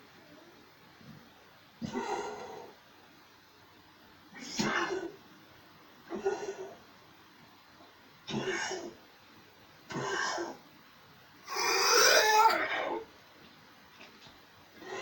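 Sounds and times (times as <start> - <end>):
dog coughing: 4.4 - 5.2, 8.3 - 8.9, 9.9 - 10.6.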